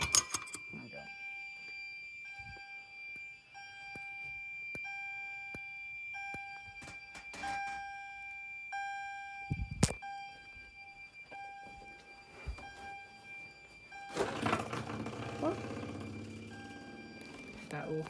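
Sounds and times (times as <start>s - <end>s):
fire alarm tone: 0.0s - 18.0s
steady high-pitched beep: 16.0s - 18.0s.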